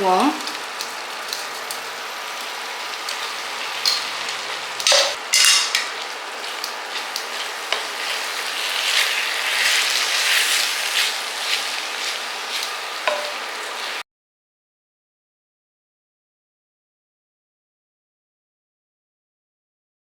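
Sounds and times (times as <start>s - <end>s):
eggplant sizzling in oil: 0.0s - 14.0s.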